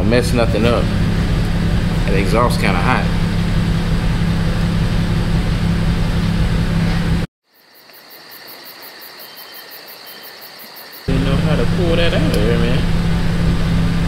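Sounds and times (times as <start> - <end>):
fast even pulsing: 0.0 - 7.2, 11.1 - 14.0
car engine idling: 0.0 - 7.3, 11.1 - 14.0.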